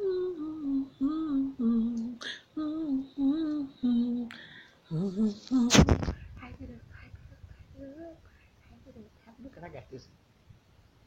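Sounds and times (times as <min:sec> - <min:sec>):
woman humming: 0:00.0 - 0:05.9, 0:07.7 - 0:08.3.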